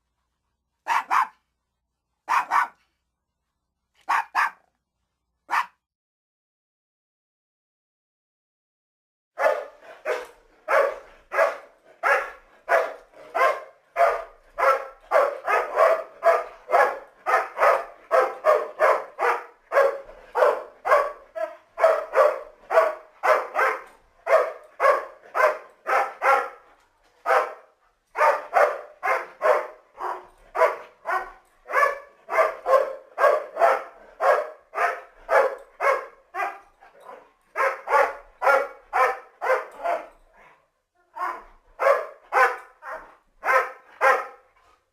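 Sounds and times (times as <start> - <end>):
dog barking: 0.8 - 1.4, 2.3 - 2.8, 4.0 - 4.7, 5.5 - 5.8, 9.4 - 40.2, 41.0 - 44.5.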